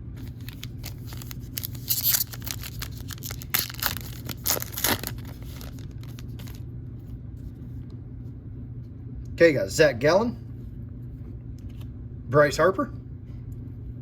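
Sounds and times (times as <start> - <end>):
foil wrapper tearing and crinkling: 0.2 - 6.6.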